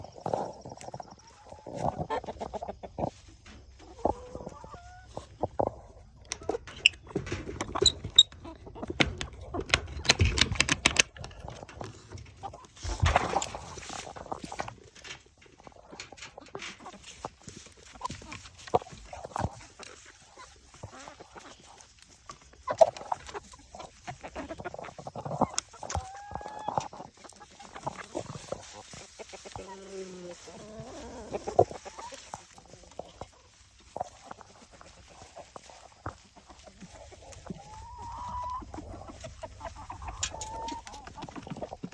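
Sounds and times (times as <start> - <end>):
chickens clucking: 0.0 - 41.9
drawn-out chicken call: 0.0 - 41.9
knocks and scuffling: 0.0 - 41.9
clicks and knocks: 6.3 - 13.6.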